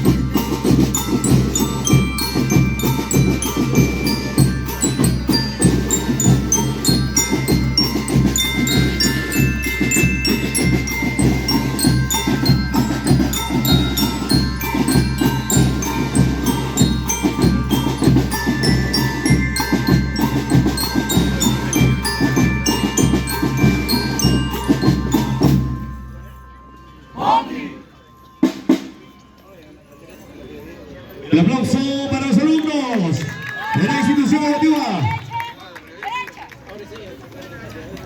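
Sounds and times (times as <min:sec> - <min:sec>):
drums keeping steady beat: 0:00.0 - 0:27.5, 0:28.2 - 0:29.4
bell lyres playing melody: 0:00.0 - 0:35.2.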